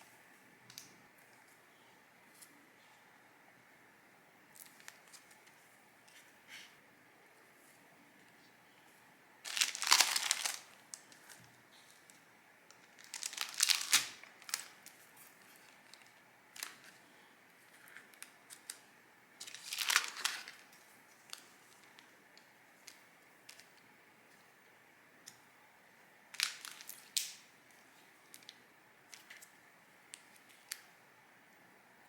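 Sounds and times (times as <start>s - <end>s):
packaging crinkling and rustling: 9.4s - 17.0s, 19.4s - 22.1s, 26.3s - 27.4s.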